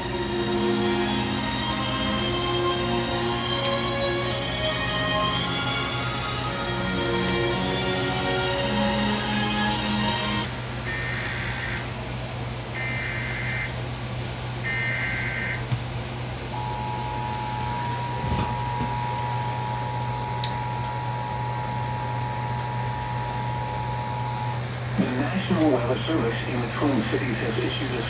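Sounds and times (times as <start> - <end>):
two-tone attention signal: 16.6 - 25.1.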